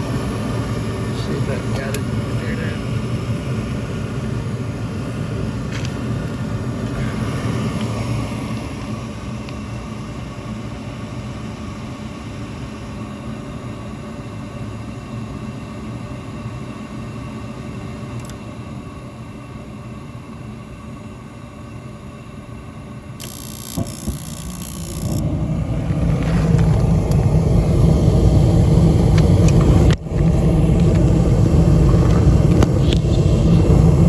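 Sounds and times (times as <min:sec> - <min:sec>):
low mechanical rumble: 0:00.0 - 0:34.0
sharp clicks: 0:23.2 - 0:25.2.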